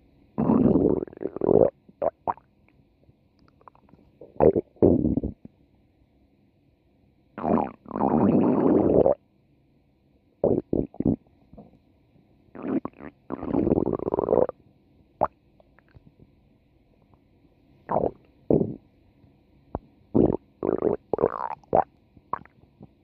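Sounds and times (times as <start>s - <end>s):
stomach growling: 0.4s - 2.4s, 7.4s - 9.2s, 10.4s - 11.8s, 12.6s - 14.6s, 17.9s - 18.8s, 19.8s - 23.0s.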